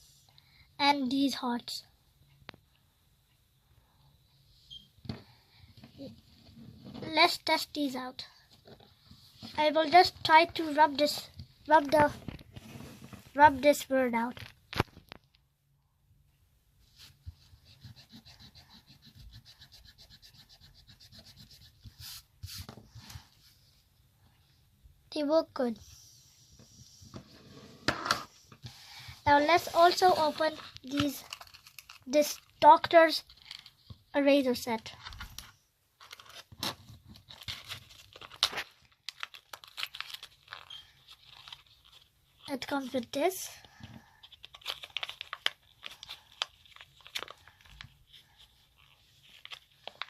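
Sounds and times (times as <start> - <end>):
eraser rubbing on paper: 17.0 - 22.7, 29.5 - 30.6
plastic packaging crinkling: 29.8 - 32.6, 37.2 - 42.5, 44.2 - 50.0.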